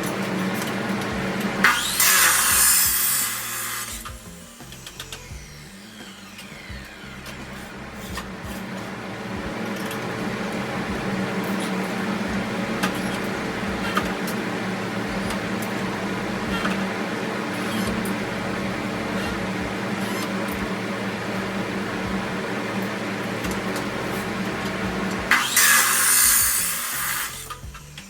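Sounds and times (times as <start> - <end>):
power tool whine winding down: 0.0 - 28.0
steady machine hum: 0.0 - 28.0
sharp clicks: 0.6 - 8.3.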